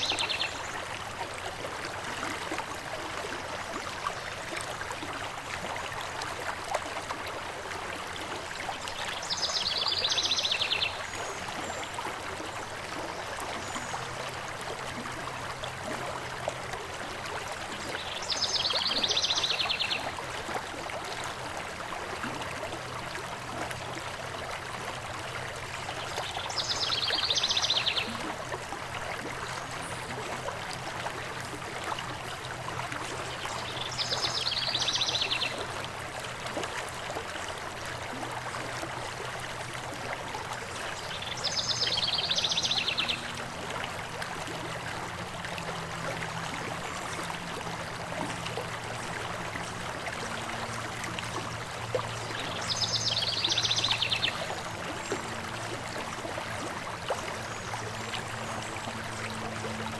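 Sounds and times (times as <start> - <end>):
stream of water running: 0.0 - 59.9.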